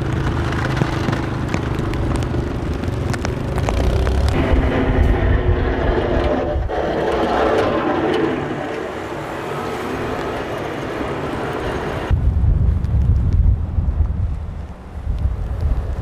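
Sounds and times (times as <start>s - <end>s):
vehicle engine running: 0.0s - 12.1s.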